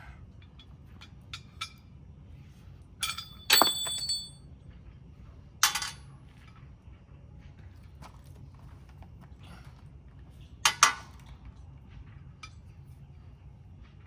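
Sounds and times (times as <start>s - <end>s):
loud metal clank: 3.0s - 4.3s
metal parts clinking: 3.0s - 4.3s.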